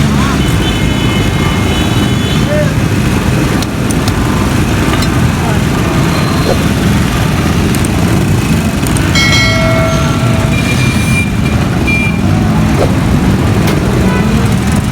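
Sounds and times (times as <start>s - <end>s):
engine rumble: 0.0s - 14.9s
high-pitched tone: 9.1s - 12.7s.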